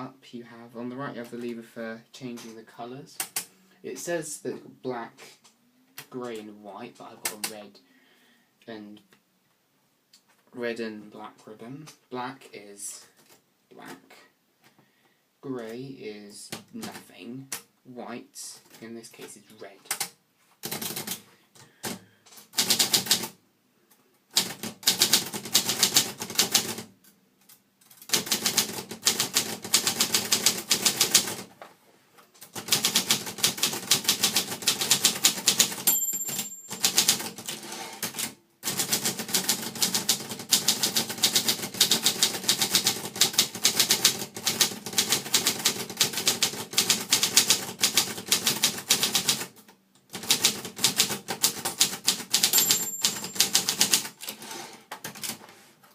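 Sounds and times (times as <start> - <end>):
typewriter bell ring: 35.5 - 37.8, 52.2 - 54.0
typewriter key strikes: 51.8 - 54.0.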